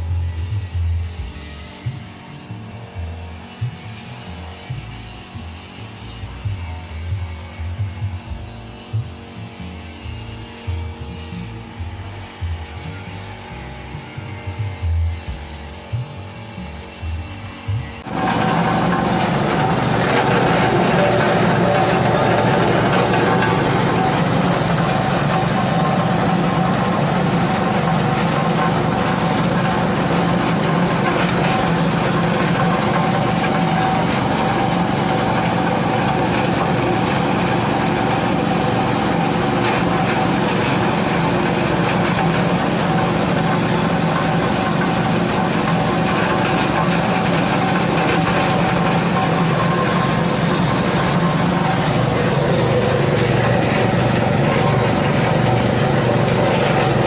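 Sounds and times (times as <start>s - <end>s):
shredding machine humming: 17.9s - 57.0s.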